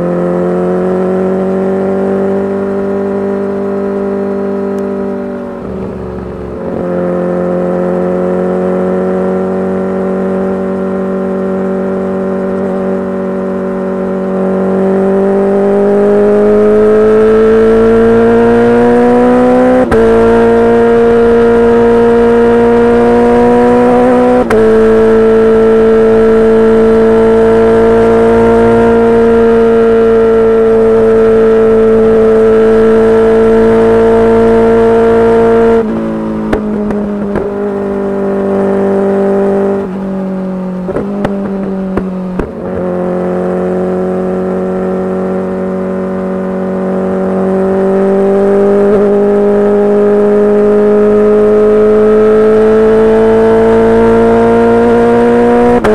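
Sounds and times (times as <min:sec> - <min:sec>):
motorcycle engine running loud: 0:00.0 - 0:55.9
exhaust popping: 0:05.2 - 0:07.7, 0:34.5 - 0:43.0.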